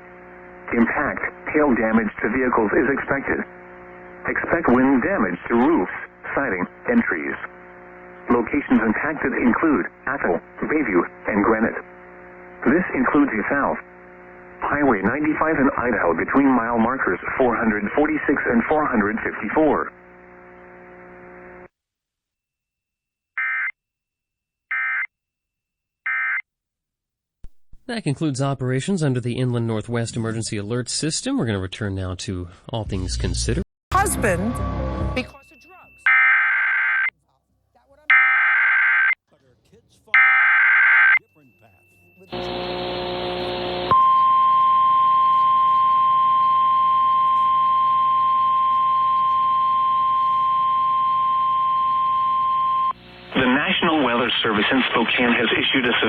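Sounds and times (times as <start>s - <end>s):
steady attention tone: 33.9s - 37.1s, 41.2s - 56.0s
buzzy digital header burst: 42.3s - 44.0s, 52.8s - 56.0s.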